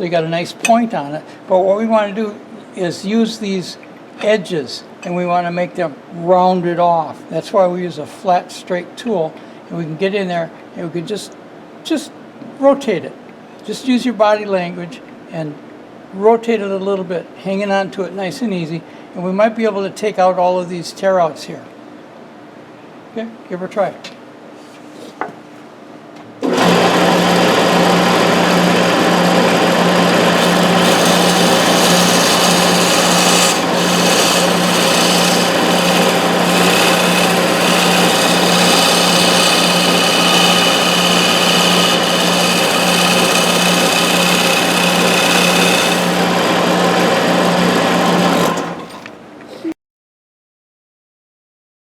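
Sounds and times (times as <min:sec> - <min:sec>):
lathe motor hum: 0:26.4 - 0:49.1
tool scraping spinning wood: 0:26.4 - 0:49.1.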